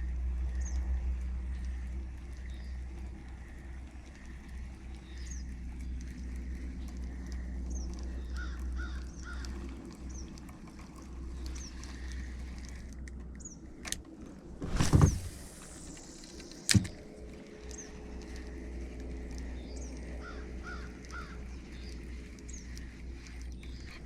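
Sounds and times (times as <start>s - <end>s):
low steady rumble: 0.0s - 24.0s
birds chirping: 14.5s - 24.0s
loud bump: 14.6s - 15.8s
harsh bird calls: 19.8s - 22.9s.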